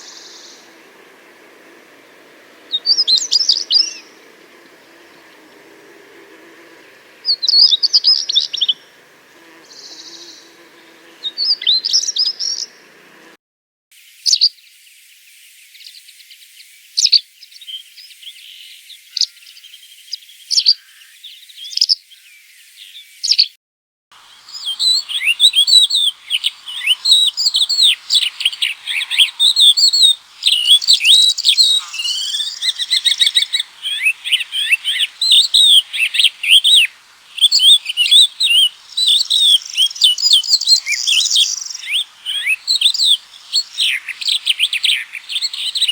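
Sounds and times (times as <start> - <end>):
songbird singing: 0.0 - 13.4, 14.3 - 23.5, 24.2 - 45.9
fast bird chirps and trills: 24.3 - 45.9
thin high bird notes: 24.3 - 45.9.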